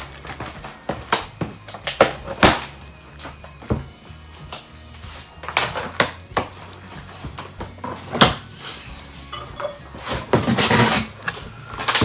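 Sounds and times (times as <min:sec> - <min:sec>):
cardboard tearing: 0:00.0 - 0:03.8, 0:09.9 - 0:12.0
knife scraping cardboard: 0:09.9 - 0:12.0.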